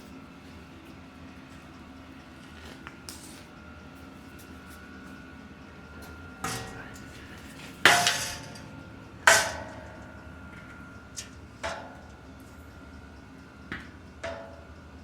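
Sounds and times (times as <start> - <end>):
metal objects clanking: 6.4 - 10.0.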